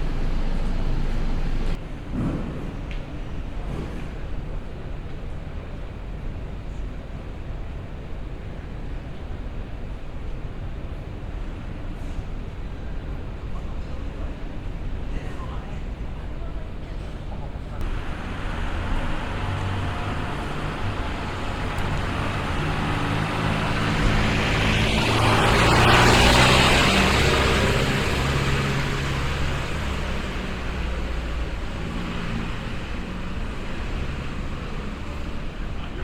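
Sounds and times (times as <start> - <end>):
low traffic rumble: 0.0 - 2.3, 17.5 - 36.0
vehicle passing by: 17.8 - 35.4.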